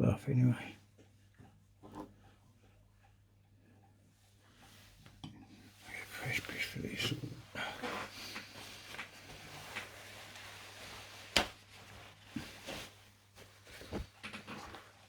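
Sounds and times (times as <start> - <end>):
tissue rubbing on clock case: 7.8 - 15.0.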